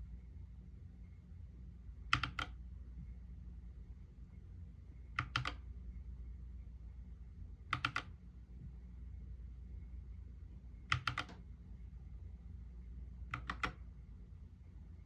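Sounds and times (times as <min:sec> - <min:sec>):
mechanical keyboard keystrokes: 0:02.1 - 0:02.6, 0:05.2 - 0:05.6, 0:07.7 - 0:08.1, 0:10.9 - 0:11.4, 0:13.3 - 0:13.8.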